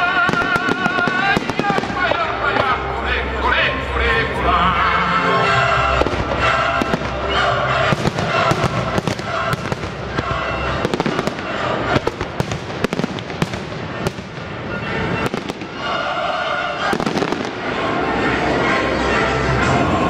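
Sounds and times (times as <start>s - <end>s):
fireworks banging and crackling: 0.0s - 2.8s, 5.9s - 18.7s
music soundtrack: 0.0s - 20.0s.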